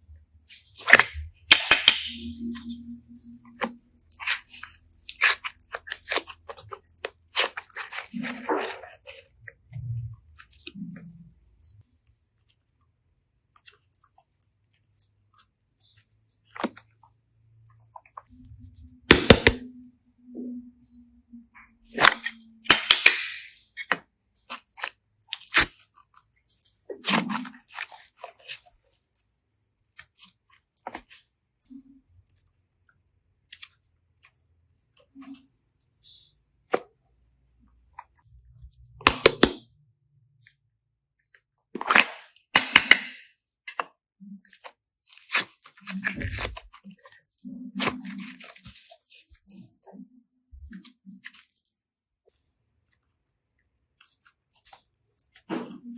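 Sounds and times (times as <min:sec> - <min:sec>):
crunching and crackling handling noises: 0:03.1 - 0:12.6, 0:23.8 - 0:31.8, 0:44.2 - 0:55.5.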